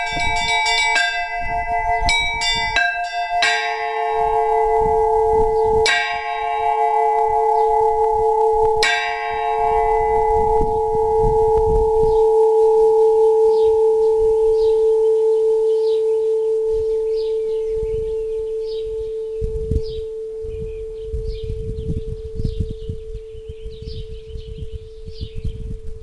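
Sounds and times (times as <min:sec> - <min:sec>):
bells struck together: 0:00.0 - 0:16.1
deep hum of large bell: 0:00.0 - 0:26.0.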